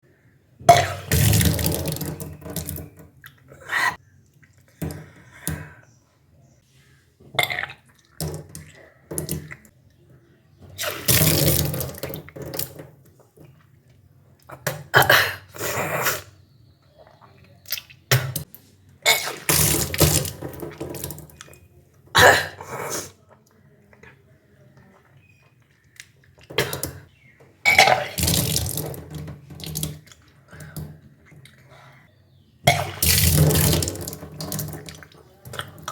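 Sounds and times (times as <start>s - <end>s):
person retching and vomiting water: 0.6s - 5.8s, 7.2s - 9.8s, 10.7s - 13.7s, 14.4s - 23.3s, 25.0s - 32.0s, 32.6s - 35.9s.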